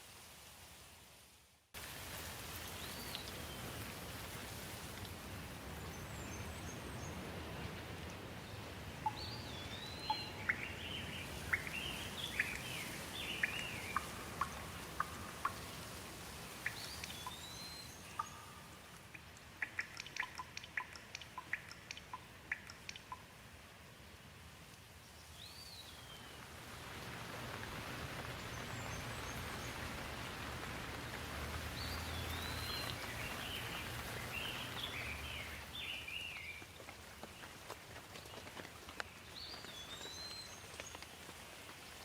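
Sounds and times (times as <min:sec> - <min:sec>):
rain falling on leaves: 0:00.0 - 0:42.0
sharp ticks: 0:18.2 - 0:23.3.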